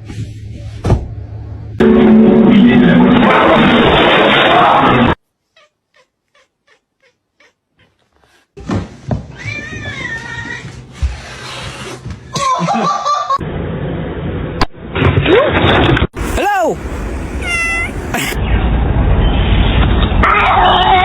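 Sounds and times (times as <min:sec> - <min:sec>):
cat meowing: 0:05.5 - 0:08.0, 0:16.2 - 0:18.4.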